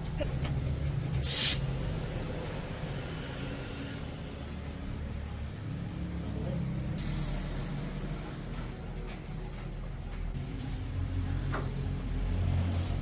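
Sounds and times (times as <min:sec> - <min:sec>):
air venting hiss: 0:01.2 - 0:04.8, 0:07.0 - 0:08.9.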